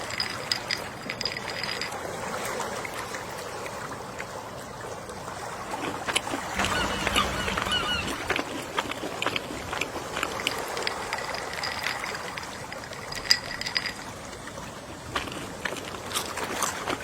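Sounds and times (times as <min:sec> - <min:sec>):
ocean waves washing: 0:05.3 - 0:15.0.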